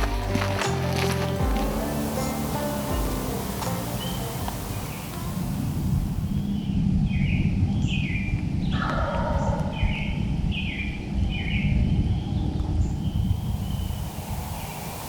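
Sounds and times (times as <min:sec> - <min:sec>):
rough bird call: 0:00.0 - 0:06.7.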